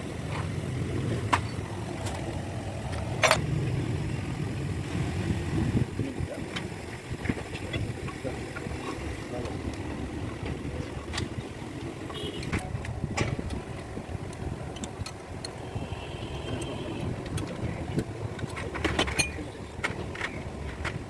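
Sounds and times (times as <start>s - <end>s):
engine running: 0.0s - 21.0s
tools clinking on metal: 18.4s - 19.5s.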